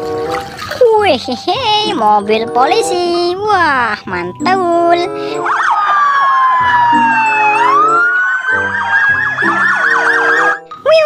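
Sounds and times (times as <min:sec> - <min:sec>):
children's background music: 0:00.0 - 0:11.0
police siren wailing: 0:05.1 - 0:10.8.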